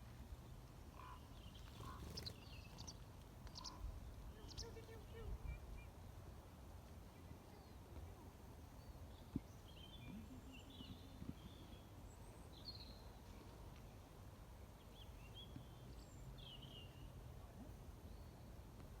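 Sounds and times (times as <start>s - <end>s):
small birds chirping: 1.0s - 6.0s.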